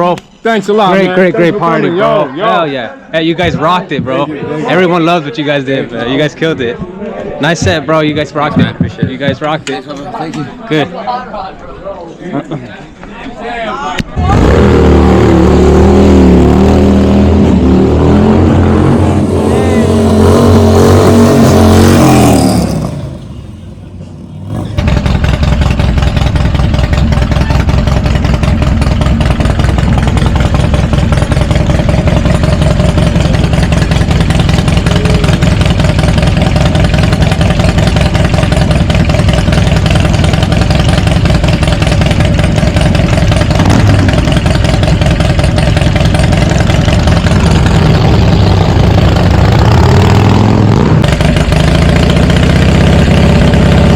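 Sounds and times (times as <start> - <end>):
motorcycle engine running: 14.2 - 53.9.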